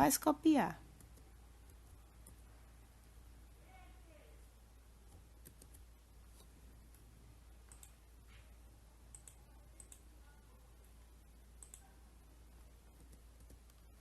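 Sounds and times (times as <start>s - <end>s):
quiet room hum: 0.0s - 14.0s
faint computer mouse clicks: 7.7s - 8.0s, 9.1s - 10.1s, 11.6s - 11.9s.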